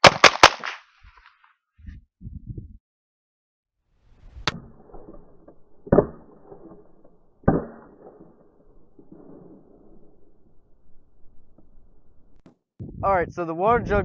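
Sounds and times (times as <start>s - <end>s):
rifle shots: 0.0s - 1.2s, 4.4s - 12.2s.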